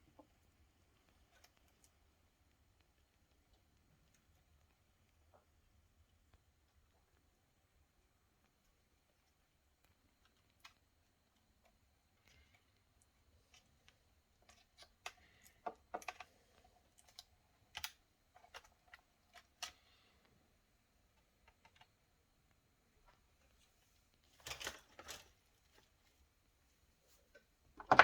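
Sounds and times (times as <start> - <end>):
plastic laptop parts clicking: 14.5 - 16.3.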